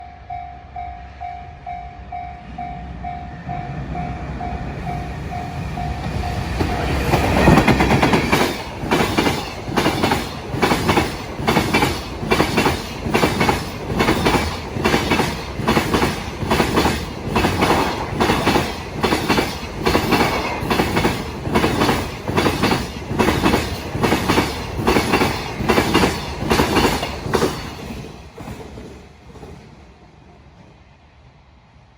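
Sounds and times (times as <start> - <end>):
electric locomotive passing: 0.0 - 31.9
train wheels clacking over rail joints: 6.0 - 29.9.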